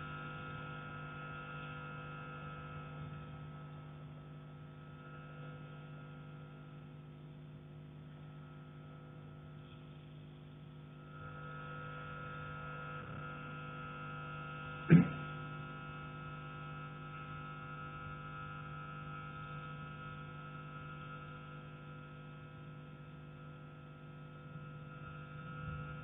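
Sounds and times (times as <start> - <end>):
steady hum: 14.6 - 15.7, 22.2 - 26.0.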